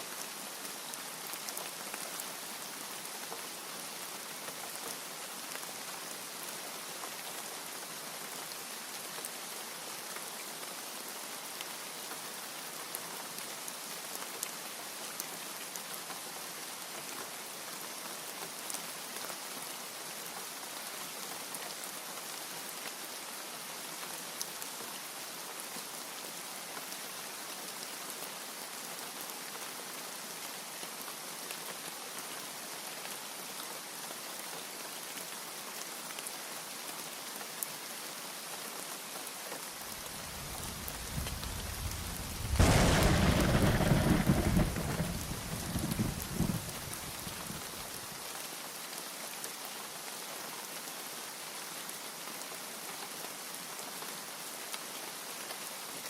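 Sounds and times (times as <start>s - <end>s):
steady rain hiss: 0.0s - 56.0s
raindrops ticking close by: 39.8s - 48.0s.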